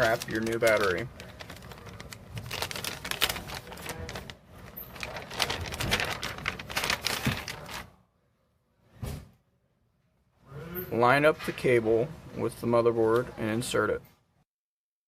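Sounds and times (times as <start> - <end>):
packaging crinkling and rustling: 0.0 - 7.9.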